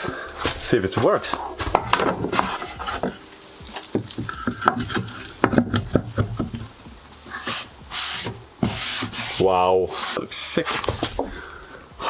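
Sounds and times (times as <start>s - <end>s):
chopping board scraping: 0.3s - 3.2s, 7.3s - 11.4s.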